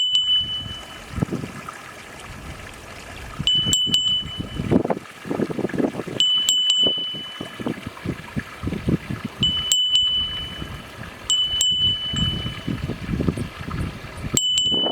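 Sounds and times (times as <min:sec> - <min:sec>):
metal bell ringing: 0:00.0 - 0:01.0, 0:03.5 - 0:04.7, 0:06.2 - 0:07.7, 0:09.4 - 0:12.8, 0:14.4 - 0:14.9.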